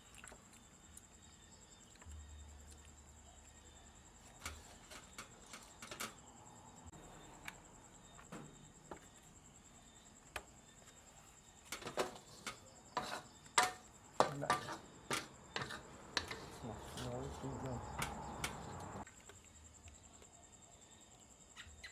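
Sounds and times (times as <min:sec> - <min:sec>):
crickets chirring: 0:00.0 - 0:21.9
light clicks and knocks: 0:17.8 - 0:19.0.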